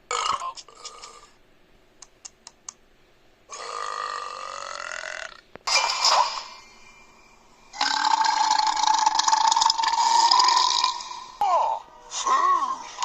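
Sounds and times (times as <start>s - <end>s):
person burping: 0.1s - 1.3s, 3.5s - 6.6s, 7.7s - 11.8s.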